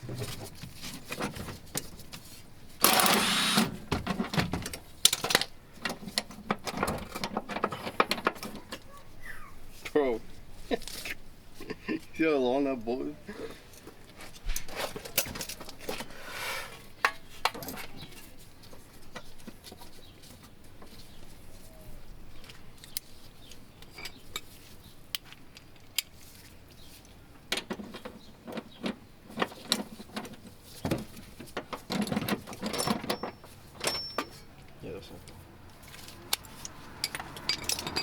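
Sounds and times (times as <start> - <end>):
tools and metal parts clinking: 2.8 - 8.9, 13.6 - 16.0, 17.0 - 18.4, 22.4 - 38.0.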